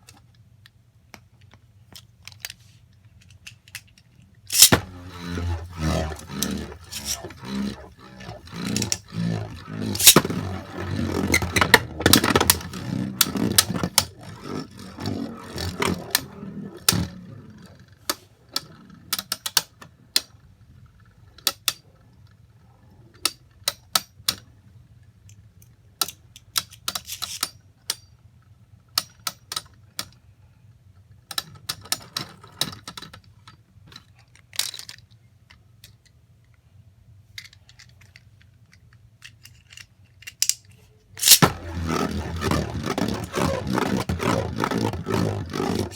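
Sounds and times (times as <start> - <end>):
plastic parts clicking: 3.2 - 17.2, 39.2 - 45.9
loud rattling: 4.5 - 17.1, 41.2 - 45.9.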